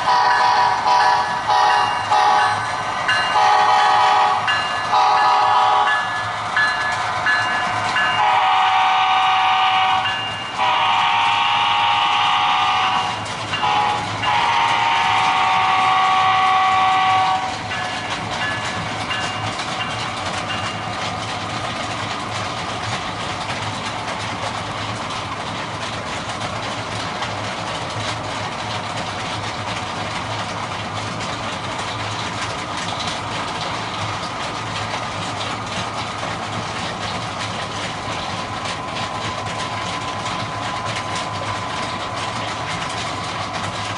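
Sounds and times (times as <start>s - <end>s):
locomotive air horn: 0.0s - 2.6s, 3.4s - 6.0s, 8.2s - 17.6s
train rumbling on rails: 0.0s - 43.9s.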